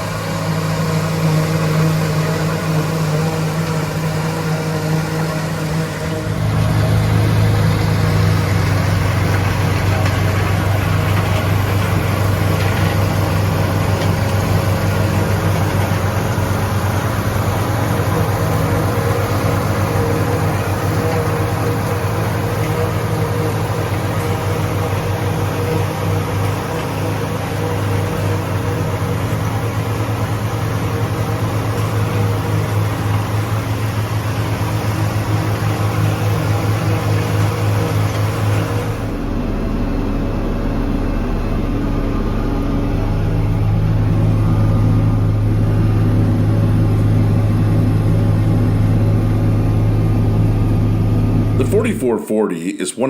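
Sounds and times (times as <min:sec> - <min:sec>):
forage harvester chopping corn: 0:00.0 - 0:33.4
diesel tractor engine droning: 0:00.0 - 0:53.0.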